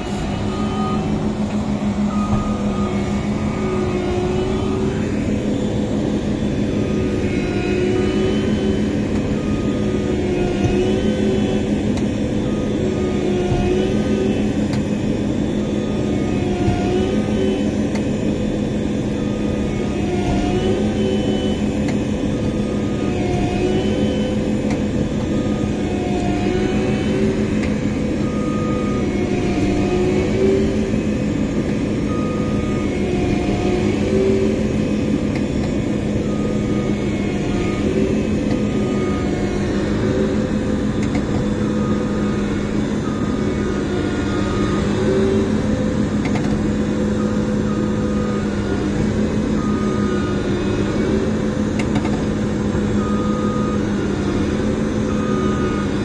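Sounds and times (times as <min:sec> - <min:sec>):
combine harvester droning: 0:00.0 - 0:56.0.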